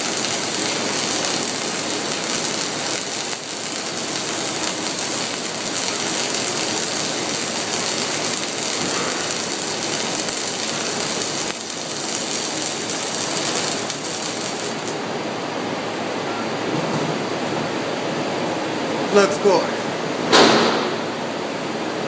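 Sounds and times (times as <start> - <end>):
welding arc crackling hiss: 0.0 - 15.1.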